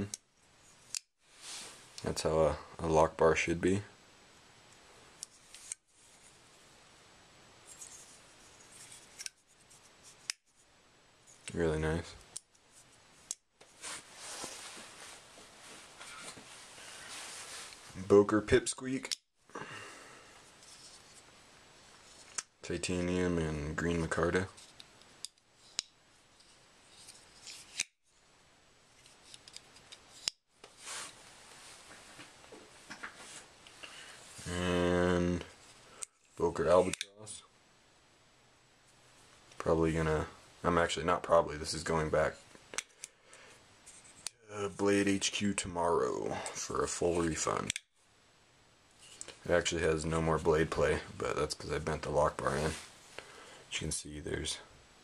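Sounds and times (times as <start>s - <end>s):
faint sliding: 12.7s - 18.3s, 28.9s - 35.8s, 49.0s - 54.4s.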